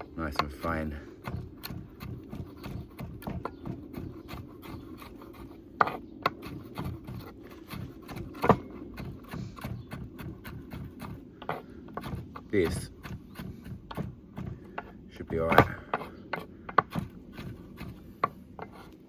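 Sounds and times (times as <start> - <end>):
knife chopping on cutting board: 8.1 - 18.8.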